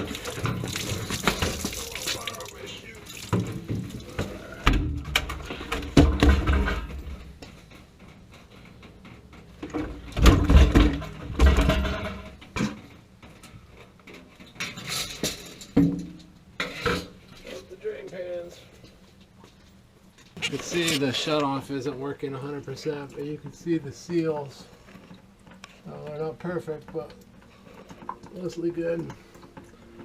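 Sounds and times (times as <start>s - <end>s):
metal plumbing parts clunking: 3.1s - 17.6s.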